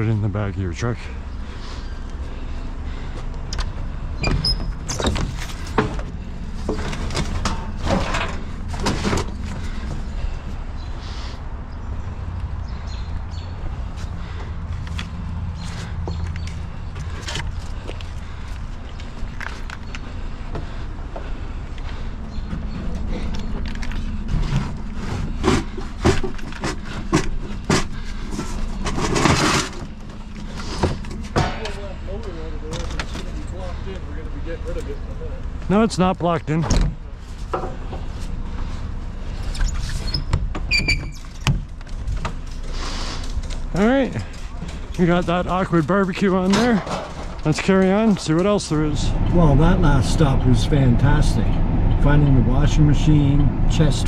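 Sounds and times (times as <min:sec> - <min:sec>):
steady low rumble: 0:00.0 - 0:40.7, 0:41.6 - 0:54.0
metal clanks and scrapes: 0:22.7 - 0:31.9.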